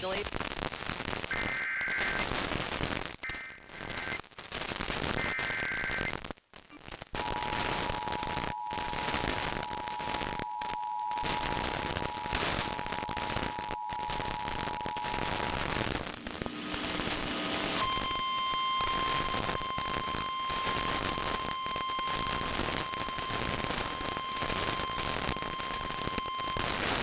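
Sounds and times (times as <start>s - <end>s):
radio static crackling: 0.0s - 27.0s
emergency alert tones: 7.2s - 15.8s, 17.8s - 27.0s.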